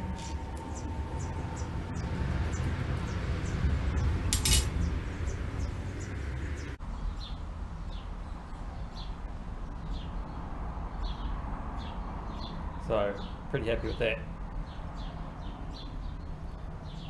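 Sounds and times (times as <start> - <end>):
handling noises: 0.0 - 6.6
metallic clink: 4.0 - 5.8.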